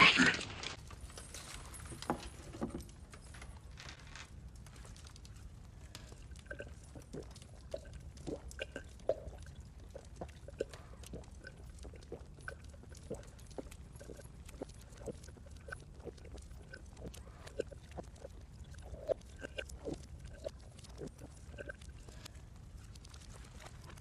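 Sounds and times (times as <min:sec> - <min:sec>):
man chewing and lip-smacking: 0:05.1 - 0:24.0.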